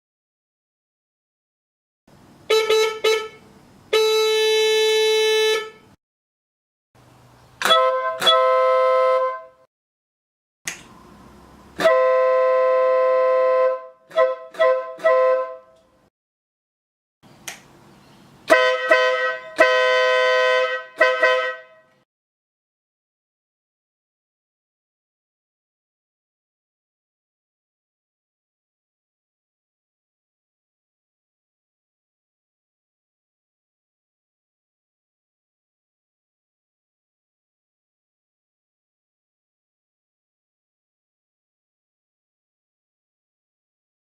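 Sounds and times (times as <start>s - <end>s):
two-tone electric air horn: 2.4s - 6.0s, 7.6s - 9.7s, 11.7s - 15.9s, 18.4s - 22.0s
single-tone motorcycle horn: 2.5s - 6.0s, 7.6s - 9.7s, 11.8s - 15.9s, 18.5s - 22.0s.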